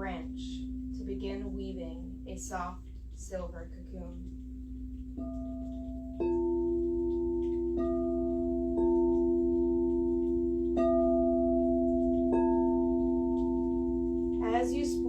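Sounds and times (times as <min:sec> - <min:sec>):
low hum: 0:00.0 - 0:15.0
singing bowls ringing: 0:04.2 - 0:15.0.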